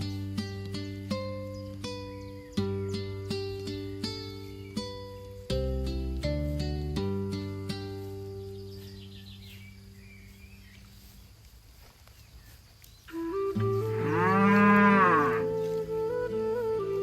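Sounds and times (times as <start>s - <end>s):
background music: 13.1s - 17.0s
cow mooing: 13.8s - 15.5s.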